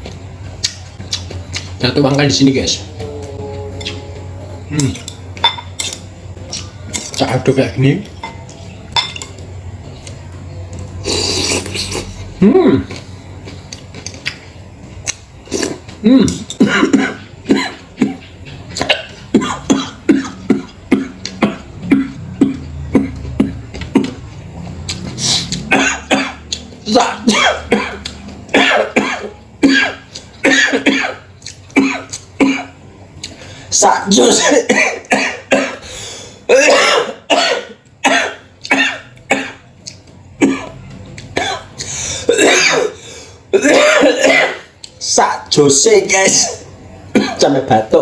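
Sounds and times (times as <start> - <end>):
man clearing throat: 16.0 - 18.2, 18.8 - 24.2, 27.0 - 28.0, 34.3 - 35.8, 36.5 - 39.6, 41.4 - 43.0, 43.6 - 44.7, 47.2 - 47.4
man coughing: 16.0 - 18.2, 18.8 - 24.2, 27.0 - 28.0, 28.6 - 31.2, 34.2 - 35.8, 36.5 - 39.6, 41.4 - 44.7, 47.2 - 47.5.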